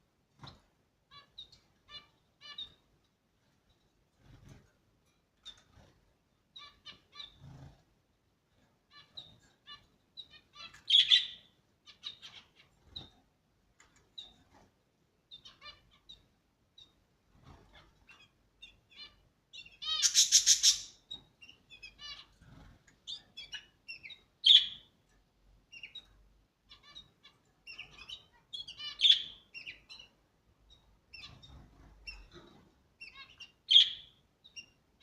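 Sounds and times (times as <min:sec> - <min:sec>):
birds chirping: 0:08.9 - 0:13.1, 0:17.7 - 0:24.9, 0:26.7 - 0:32.4
bird rapid chattering call: 0:19.9 - 0:21.0.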